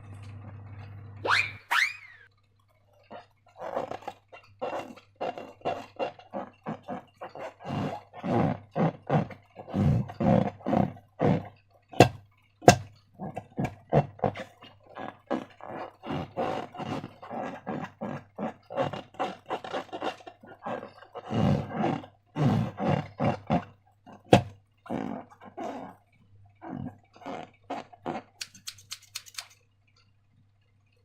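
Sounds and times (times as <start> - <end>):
slime squelching: 2.6 - 29.6
sharp snapping clicks: 28.4 - 29.6.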